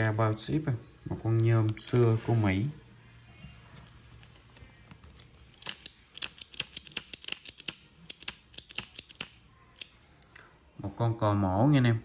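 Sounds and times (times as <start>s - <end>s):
lighter mechanism clicking: 5.5s - 10.0s.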